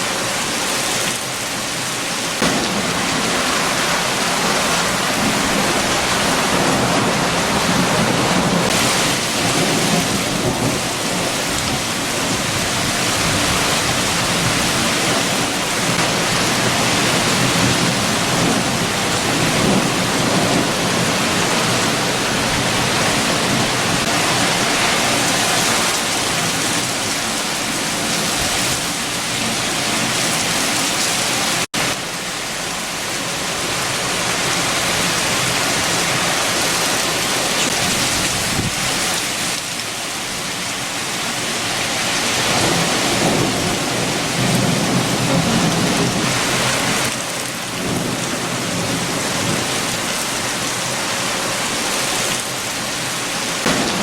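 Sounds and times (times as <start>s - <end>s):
heavy rain: 0.0s - 54.0s
strong wind: 0.0s - 54.0s.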